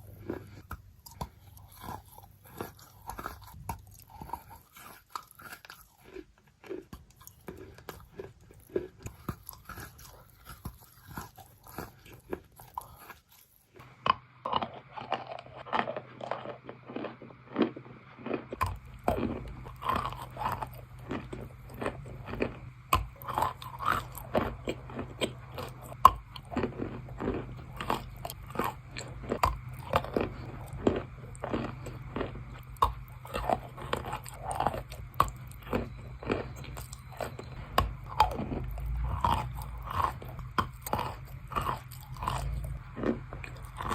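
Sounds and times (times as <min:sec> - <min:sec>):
steady low hum: 0:00.0 - 0:05.8, 0:06.8 - 0:43.9.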